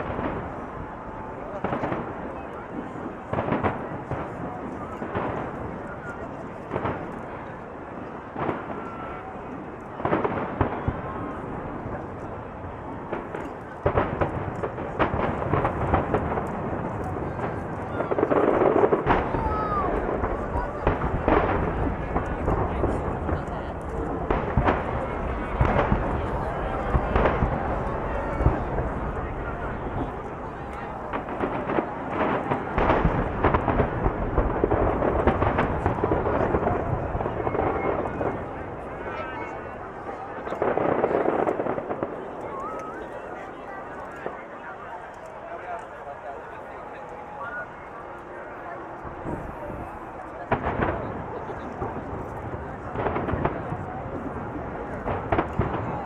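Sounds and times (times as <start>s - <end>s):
firework shells bursting: 13.0s - 39.1s, 49.0s - 55.9s.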